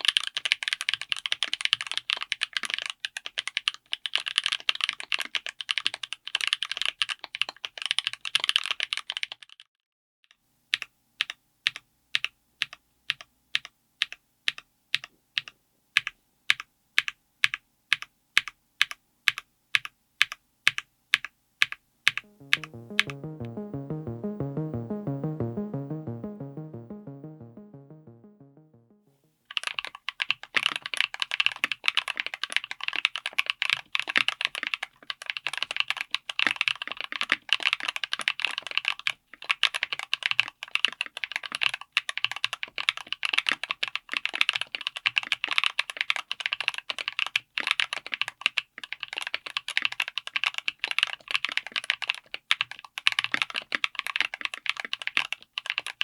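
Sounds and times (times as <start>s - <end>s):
music with quick repeating notes: 22.2s - 29.1s
mechanical keyboard typing: 40.1s - 56.0s.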